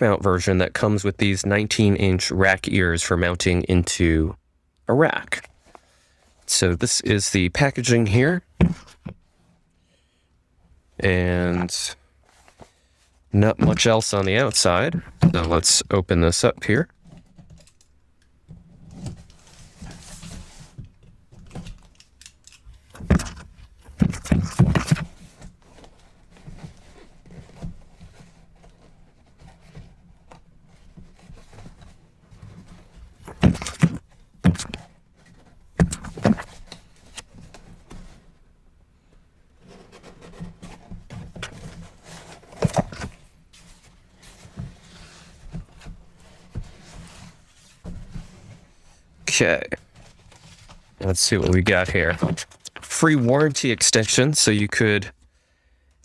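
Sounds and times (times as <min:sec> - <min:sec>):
packaging rustling and sliding: 0:21.4 - 0:29.9, 0:30.8 - 0:38.3, 0:39.6 - 0:49.1, 0:49.9 - 0:54.1.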